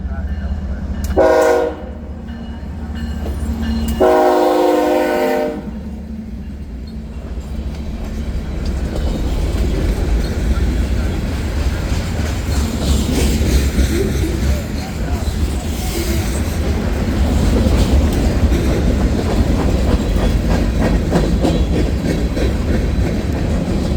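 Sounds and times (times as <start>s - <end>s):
low rumble of train: 0.0s - 23.9s
locomotive air horn blast: 1.2s - 2.0s, 4.0s - 5.9s.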